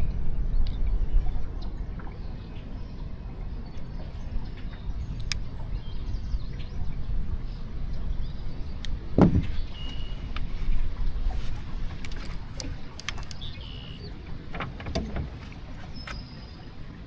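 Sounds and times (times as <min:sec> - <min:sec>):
wind rumble on microphone: 0:00.0 - 0:17.0
faint clicks: 0:05.2 - 0:05.4, 0:11.4 - 0:15.2
dull thump: 0:09.2 - 0:10.1.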